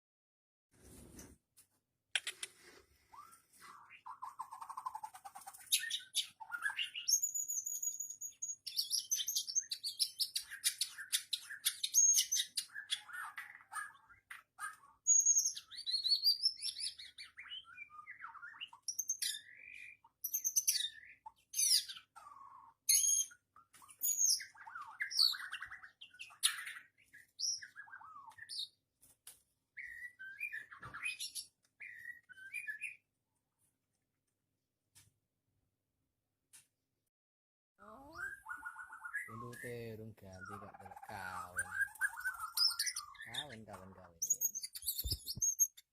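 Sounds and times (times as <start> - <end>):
bird singing whistled phrases: 24.0 - 26.8, 29.8 - 33.0, 37.9 - 45.9.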